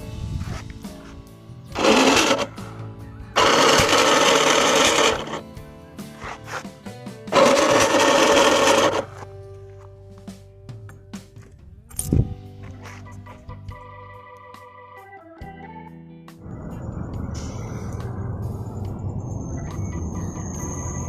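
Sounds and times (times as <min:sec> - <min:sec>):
background music: 0:00.0 - 0:21.0
loud bursts of noise: 0:03.4 - 0:05.4.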